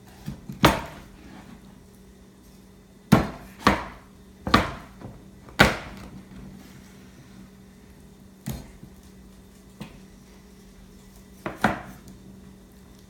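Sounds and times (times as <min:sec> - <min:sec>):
knife chopping chicken: 0:03.1 - 0:05.0.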